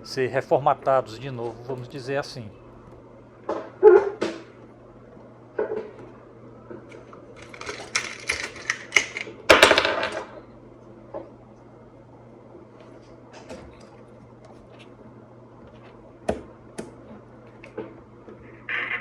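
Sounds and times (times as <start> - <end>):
radio clicks and crackles: 17.5 - 19.0.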